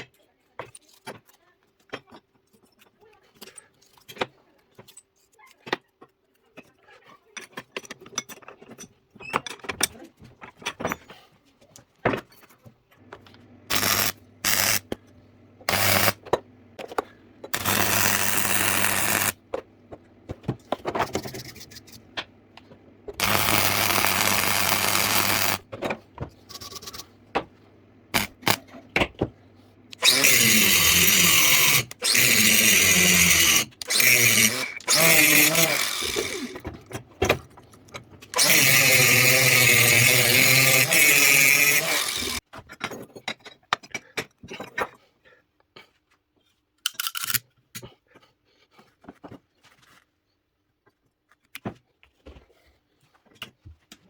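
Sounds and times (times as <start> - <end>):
power tool hissing: 13.7 - 15.0, 15.7 - 16.2, 17.6 - 19.4, 23.2 - 25.6, 28.2 - 28.7, 30.0 - 36.6, 38.4 - 42.4
parts clicking and tapping: 46.8 - 47.9.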